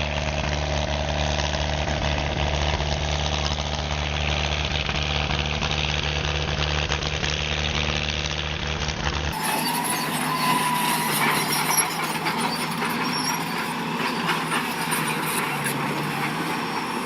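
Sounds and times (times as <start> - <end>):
large engine humming: 0.0 - 17.0
thin machine sound: 9.4 - 17.0.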